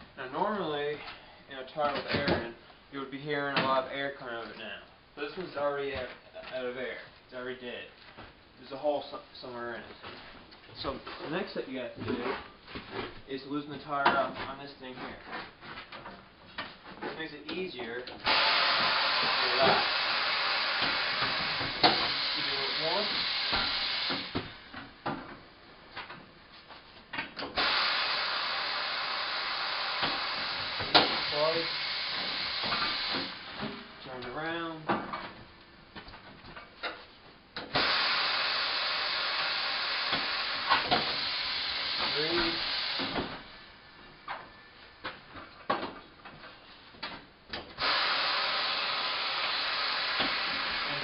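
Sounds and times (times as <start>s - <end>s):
steady hiss: 17.3s - 24.6s, 26.6s - 34.6s, 37.7s - 43.8s, 47.8s - 51.0s.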